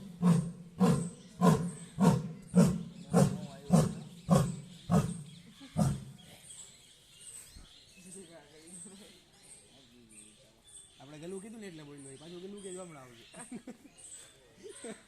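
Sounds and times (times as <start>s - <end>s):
tiger roaring calls: 0.0s - 6.1s.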